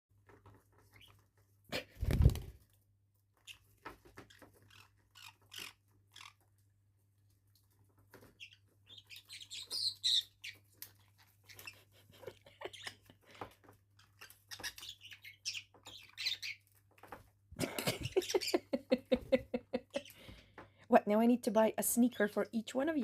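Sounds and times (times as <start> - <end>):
parrots chirping: 0.8 - 1.3, 3.4 - 6.6, 8.1 - 17.1, 17.8 - 18.9, 19.8 - 20.4
parrots chattering: 3.4 - 6.5, 8.2 - 16.8, 17.7 - 20.4
small clicks and scratches: 10.0 - 15.0.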